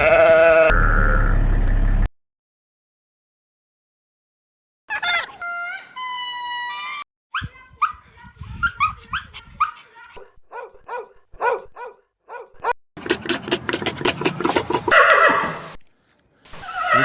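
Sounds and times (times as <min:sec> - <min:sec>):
dog whining and yelping: 0:07.4 - 0:10.0.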